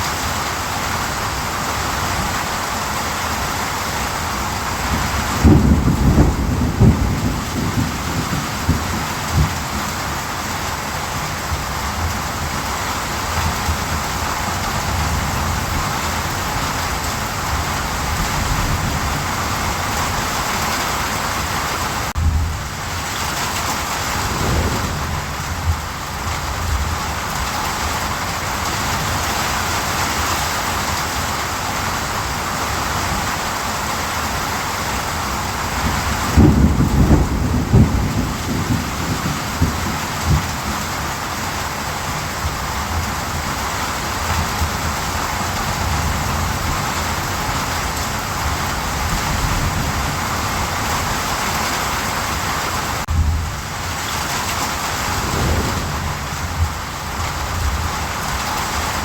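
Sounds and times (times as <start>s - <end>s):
steady rain falling: 0.0s - 59.0s
thunder rumbling: 4.9s - 10.2s, 22.1s - 27.6s, 35.8s - 40.7s, 54.7s - 59.0s.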